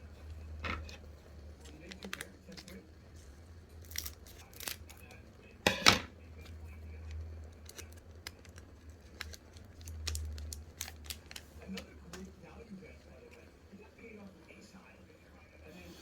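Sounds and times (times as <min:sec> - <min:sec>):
sharp ripping sound: 0:03.8 - 0:05.1.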